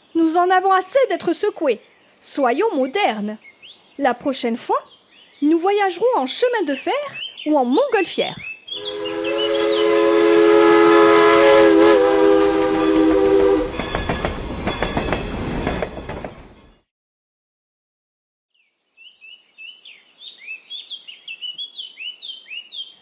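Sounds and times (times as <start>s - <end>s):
birds chirping: 0.0s - 10.1s, 18.6s - 23.0s
multi-tone train horn: 8.8s - 13.8s
train wheels clattering on rails: 13.6s - 16.7s.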